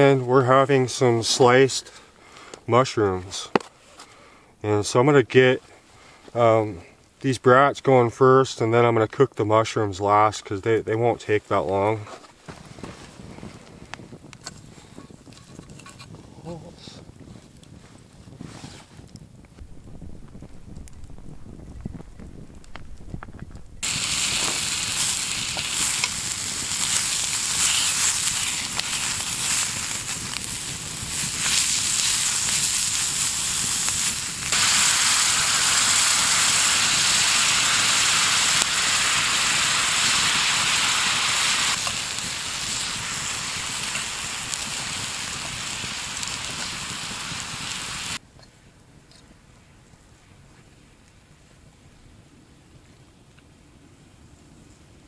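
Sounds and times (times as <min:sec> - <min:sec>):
sausages sizzling: 0:19.6 - 0:48.2.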